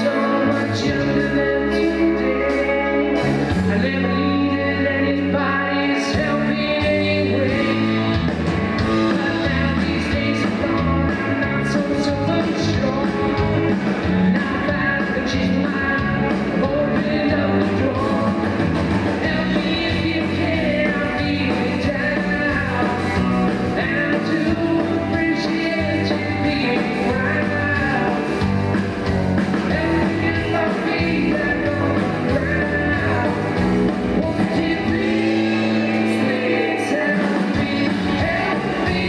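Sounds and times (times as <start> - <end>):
lead vocal singing: 0.0 - 39.0
live rock band playing: 0.0 - 39.0.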